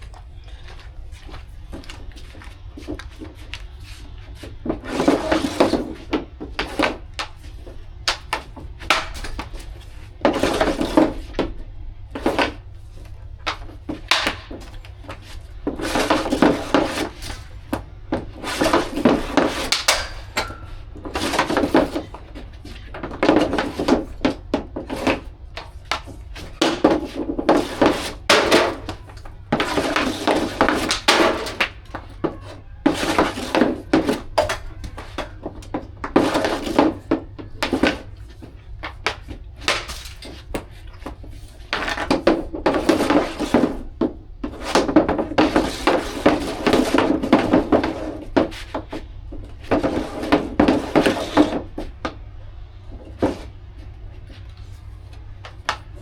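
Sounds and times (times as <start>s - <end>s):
skate blades scraping ice: 0.0s - 56.0s
steady low hum: 0.0s - 56.0s
stick hitting puck: 0.1s - 53.6s, 54.2s - 56.0s.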